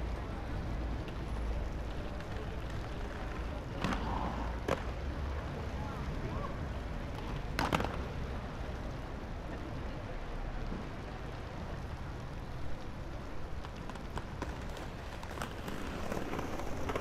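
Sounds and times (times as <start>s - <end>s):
skateboard wheels rolling on concrete: 0.0s - 17.0s
skateboard clack: 1.0s - 5.1s, 7.1s - 8.4s, 12.8s - 17.0s.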